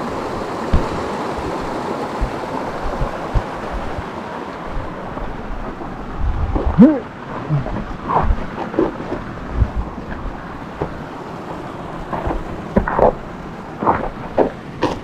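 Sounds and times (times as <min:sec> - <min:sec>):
waterfall rushing: 0:00.0 - 0:15.0
wind thumps on microphone: 0:00.7 - 0:04.1, 0:05.6 - 0:11.0.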